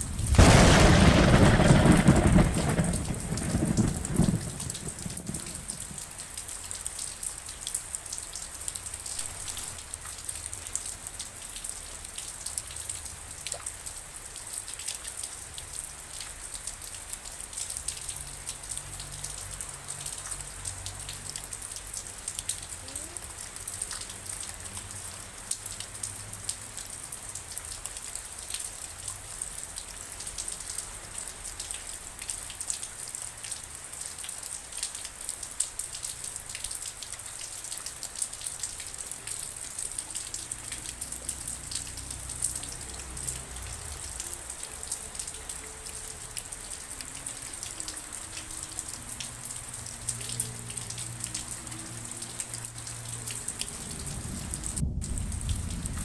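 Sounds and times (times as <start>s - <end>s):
thunder roll: 0.0s - 6.2s, 53.6s - 56.0s
rain drops ticking: 0.0s - 56.0s.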